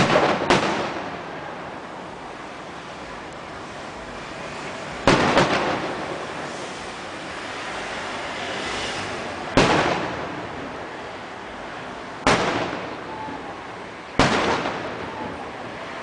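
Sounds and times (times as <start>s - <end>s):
firework shells booming: 0.0s - 1.4s, 5.0s - 6.5s, 9.5s - 10.6s, 12.2s - 13.4s, 14.1s - 15.5s
crackling hiss of firework bursts: 0.0s - 16.0s.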